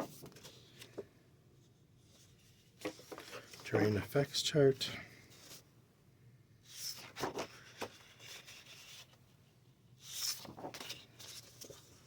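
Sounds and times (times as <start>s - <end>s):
paper sheets rustling and sliding: 0.0s - 1.0s, 2.1s - 3.7s, 6.6s - 9.2s, 10.0s - 12.0s.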